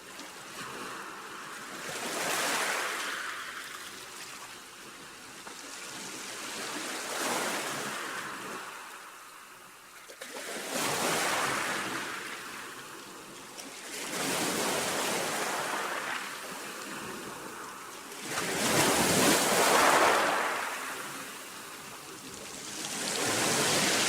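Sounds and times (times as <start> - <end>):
sea waves breaking: 14.0 - 24.0.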